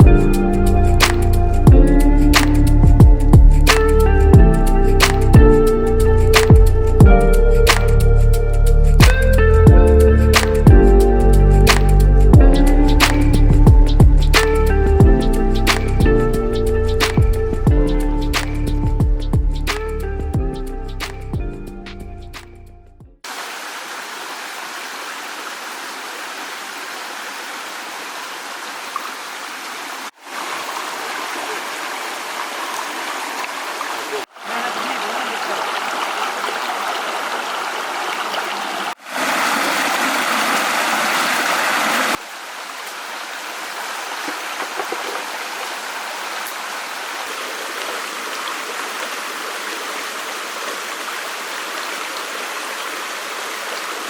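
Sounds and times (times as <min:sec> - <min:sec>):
stream water rushing: 0:03.6 - 0:09.3, 0:23.2 - 0:54.0.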